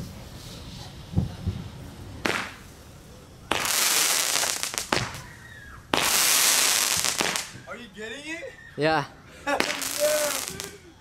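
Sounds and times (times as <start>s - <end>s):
firework hissing spray: 0.0s - 7.6s, 9.5s - 10.8s
firework bang: 1.1s - 2.8s, 3.5s - 7.7s
firework sharp cracks: 1.1s - 7.7s, 9.6s - 10.8s
faint falling whistle: 5.2s - 5.9s.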